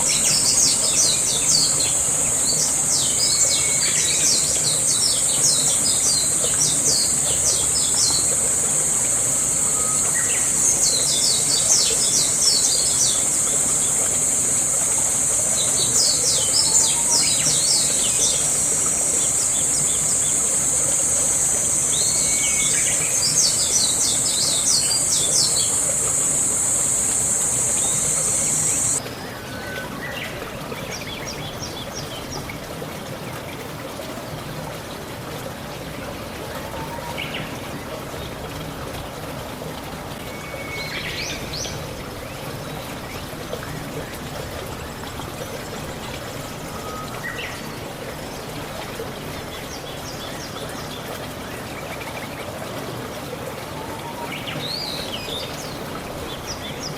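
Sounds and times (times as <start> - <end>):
high-pitched insect buzz: 0.0 - 29.0
songbirds chirping: 0.1 - 29.0.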